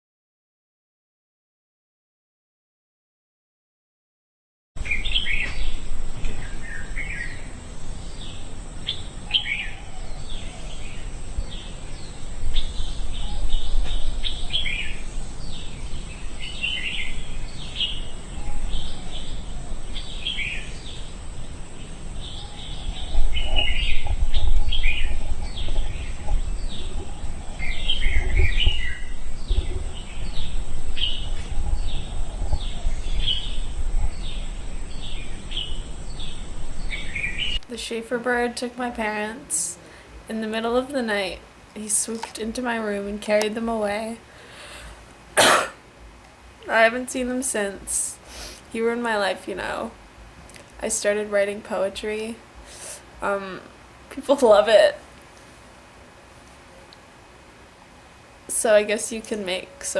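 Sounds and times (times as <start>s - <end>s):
small birds chirping: 4.8s - 37.8s
low rumble: 5.1s - 37.7s.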